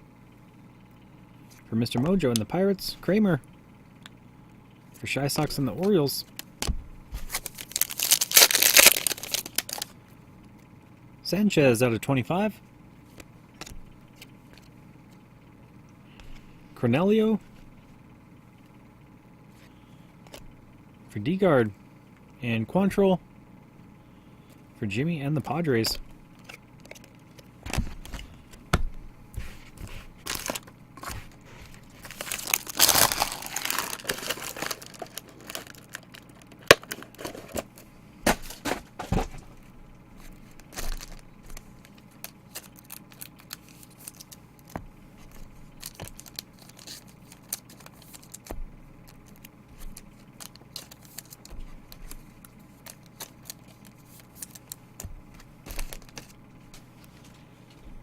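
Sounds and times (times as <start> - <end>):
wrappers tearing and crinkling: 7.2 - 9.9, 30.2 - 37.7, 40.5 - 41.3, 41.9 - 44.4, 45.8 - 48.5, 52.8 - 54.8.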